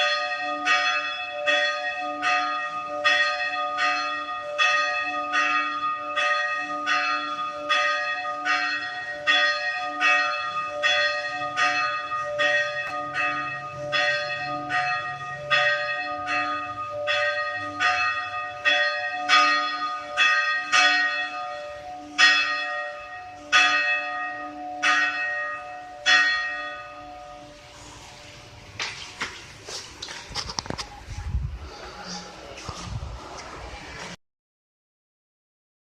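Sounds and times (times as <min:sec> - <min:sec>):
church bell ringing: 0:00.0 - 0:27.9.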